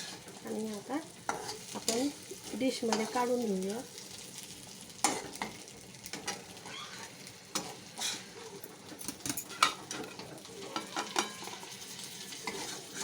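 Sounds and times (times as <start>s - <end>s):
metal spoon scraping a pan: 0.0s - 0.3s, 1.3s - 2.2s, 2.8s - 3.4s, 5.0s - 13.0s
faint sizzle from pan: 0.0s - 13.0s.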